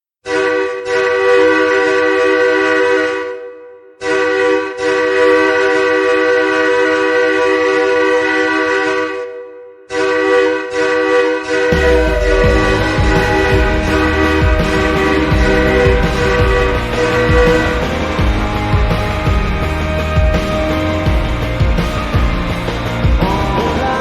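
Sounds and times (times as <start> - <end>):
air horn chord blasts: 0.2 - 24.0.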